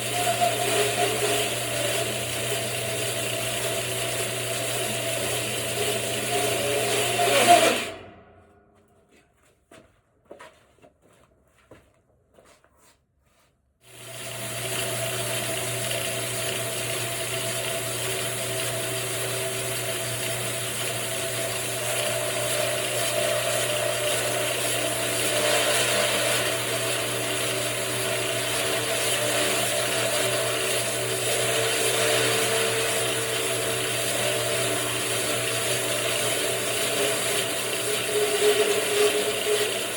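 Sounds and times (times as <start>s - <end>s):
bandsaw mill motor humming: 0.0s - 8.2s, 13.9s - 39.9s.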